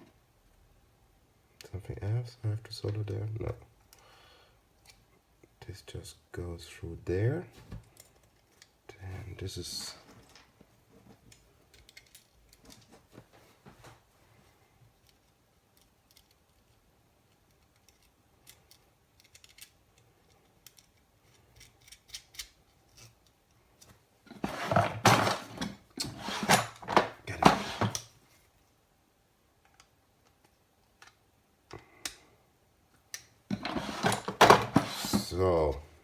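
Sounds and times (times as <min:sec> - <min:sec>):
rustling and clattering handling: 0:09.6 - 0:16.8, 0:22.7 - 0:28.5, 0:33.5 - 0:35.4
small parts clicking into case: 0:11.3 - 0:12.9, 0:15.0 - 0:23.9.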